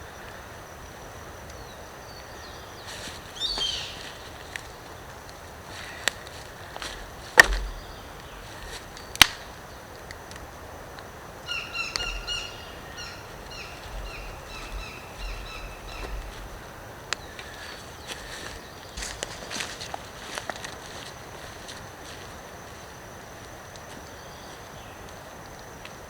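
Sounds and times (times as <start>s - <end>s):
sharp knocks or snaps: 7.3s - 8.3s, 9.0s - 9.5s.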